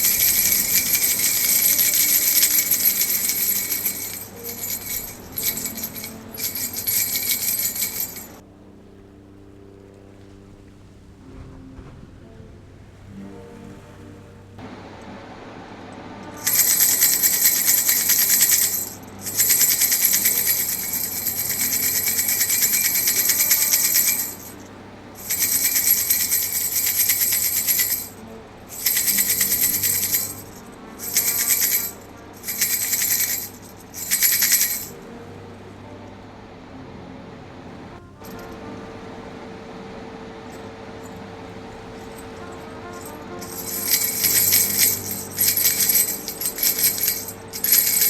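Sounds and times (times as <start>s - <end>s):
baby rattle toy shaken: 0.0s - 8.4s, 16.4s - 24.6s, 25.2s - 35.0s, 42.9s - 48.0s.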